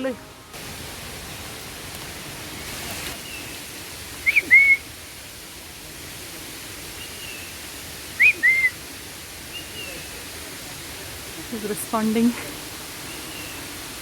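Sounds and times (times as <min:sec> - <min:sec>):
stream rushing: 0:00.0 - 0:14.0
person whistling bird call: 0:04.2 - 0:04.8, 0:08.2 - 0:08.8
bird whistling: 0:04.2 - 0:04.9, 0:08.2 - 0:08.8.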